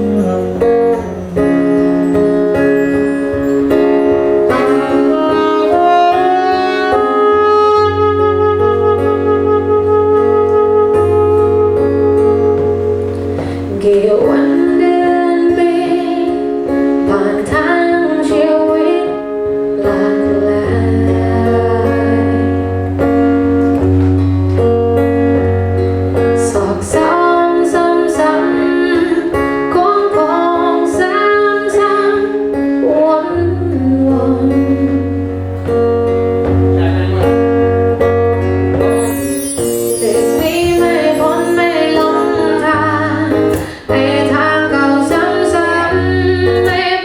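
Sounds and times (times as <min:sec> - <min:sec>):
acoustic guitar: 0:00.0 - 0:47.0
person singing: 0:38.8 - 0:47.0.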